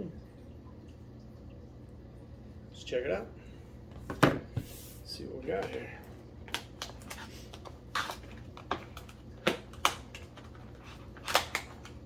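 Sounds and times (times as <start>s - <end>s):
plastic packaging cracking: 6.4s - 12.0s.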